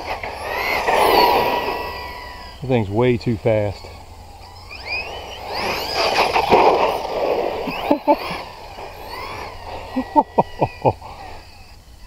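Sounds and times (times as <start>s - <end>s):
electric motor whining: 0.0s - 12.0s
tyre noise: 3.7s - 11.8s.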